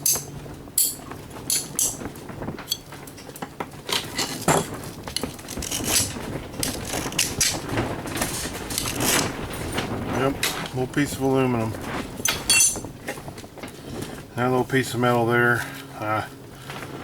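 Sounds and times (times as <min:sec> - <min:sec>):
small metal and plastic pieces clattering: 0:00.0 - 0:02.0, 0:03.9 - 0:09.9.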